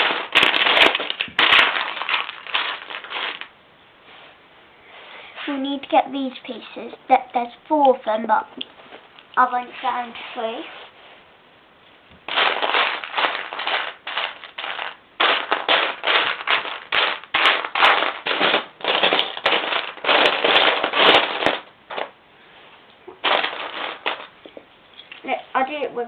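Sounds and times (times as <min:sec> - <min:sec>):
plastic bricks rattling: 0:00.0 - 0:03.5, 0:12.3 - 0:22.1, 0:23.2 - 0:24.6.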